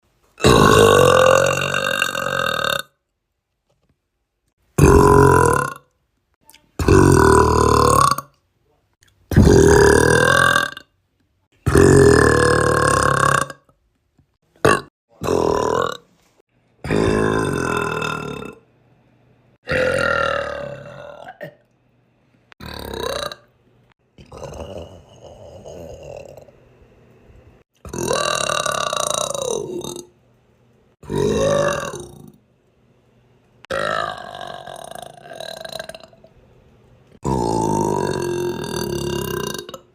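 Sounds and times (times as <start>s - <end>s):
person belching: 0.4s - 3.0s, 4.8s - 5.9s, 6.8s - 8.4s, 9.3s - 10.9s, 11.6s - 13.7s, 14.6s - 16.1s, 16.8s - 18.6s, 19.6s - 21.7s, 22.6s - 23.5s, 24.2s - 26.5s, 27.8s - 30.1s, 31.0s - 32.4s, 33.7s - 36.3s, 37.2s - 39.9s.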